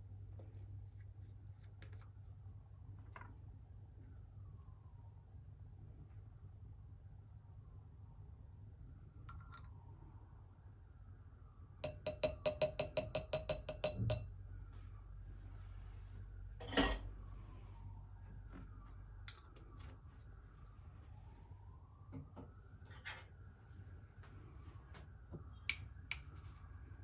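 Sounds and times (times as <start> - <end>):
metal spoon clinking against glass: 11.8 - 14.3, 25.7 - 26.4.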